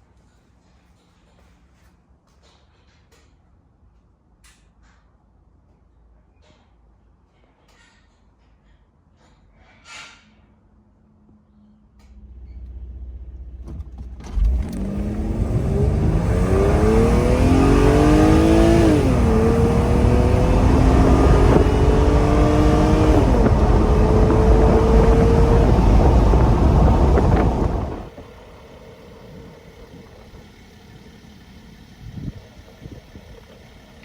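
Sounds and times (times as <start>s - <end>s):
car engine accelerating: 12.6s - 34.0s.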